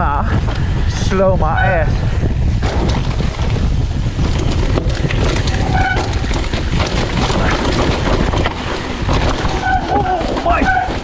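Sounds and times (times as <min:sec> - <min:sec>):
bike rattling over dirt: 0:00.0 - 0:11.0
wind rumble on microphone: 0:00.0 - 0:11.0
brake squeal: 0:05.6 - 0:06.4, 0:09.4 - 0:11.0.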